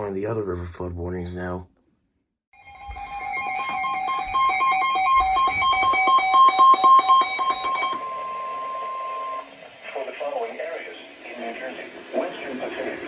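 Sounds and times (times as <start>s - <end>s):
two-tone electronic alert beeping: 2.6s - 9.4s.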